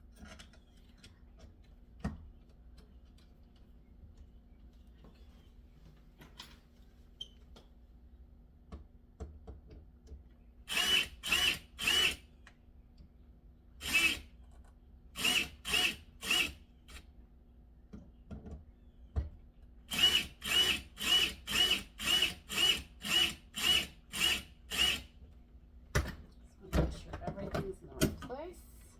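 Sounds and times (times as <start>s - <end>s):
cordless drill whining in bursts: 10.7s - 12.3s, 13.8s - 14.3s, 15.2s - 17.0s, 19.9s - 25.1s.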